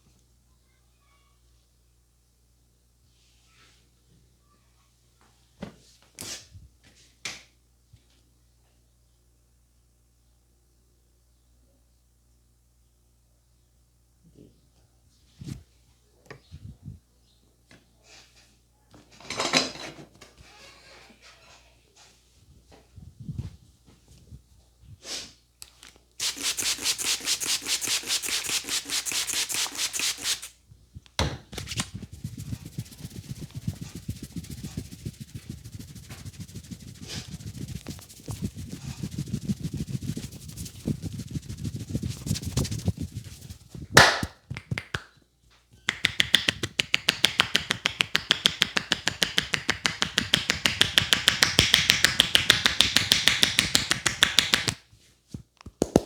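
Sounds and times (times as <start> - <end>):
hands slapping and rubbing head: 26.2 - 30.5, 31.2 - 45.1, 45.9 - 56.0.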